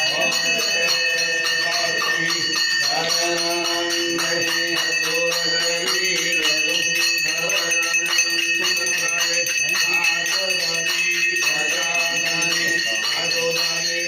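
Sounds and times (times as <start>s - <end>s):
devotional singing: 0.0s - 14.0s
temple bells ringing: 0.0s - 14.0s.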